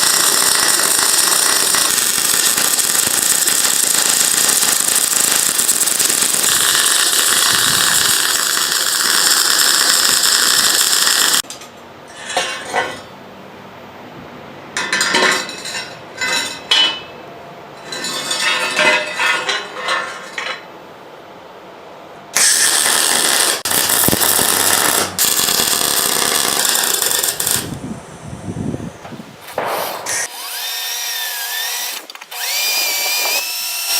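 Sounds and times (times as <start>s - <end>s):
power tool running: 0.0s - 11.4s, 29.7s - 33.9s
metal parts and tools clattering: 11.4s - 13.1s, 14.8s - 17.1s, 17.8s - 20.7s.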